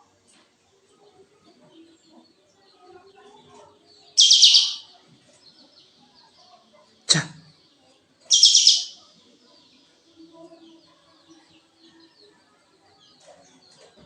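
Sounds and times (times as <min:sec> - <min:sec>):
songbird singing rapid high notes: 0:04.2 - 0:04.9, 0:08.3 - 0:09.1
faint bird twittering: 0:04.2 - 0:05.0, 0:08.3 - 0:09.1.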